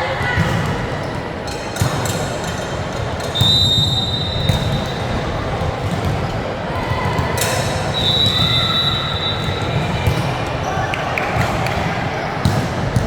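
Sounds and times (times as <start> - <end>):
court noise and voices: 0.0 - 13.0
high shoe squeal: 3.3 - 5.1.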